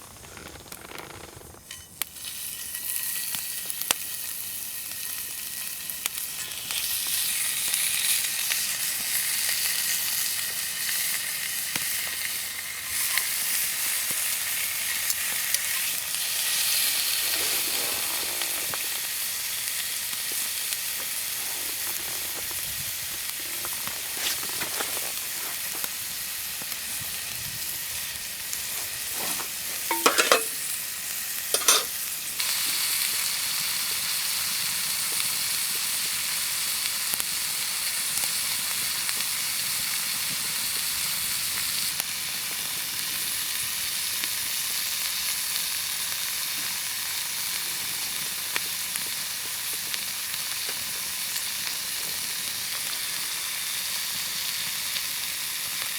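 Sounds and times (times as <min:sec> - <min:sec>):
meat sizzling: 0:01.7 - 0:55.9
metallic clicks and scrapes: 0:31.6 - 0:31.9.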